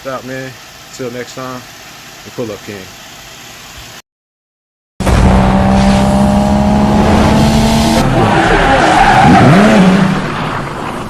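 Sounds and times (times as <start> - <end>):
car engine: 5.0 - 11.0.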